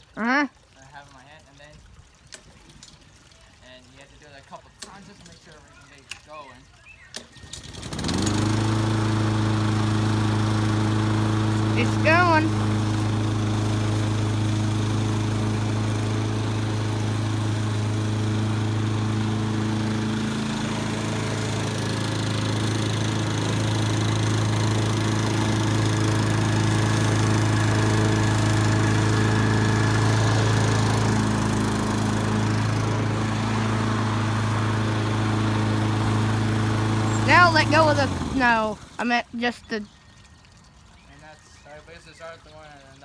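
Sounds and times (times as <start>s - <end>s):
lawnmower engine running: 7.1s - 39.8s.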